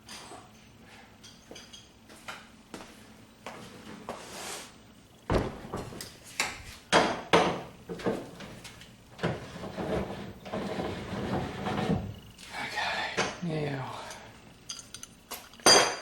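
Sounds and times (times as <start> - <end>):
scraping and rustling: 7.9 - 12.3
hand tools clattering: 14.0 - 16.0.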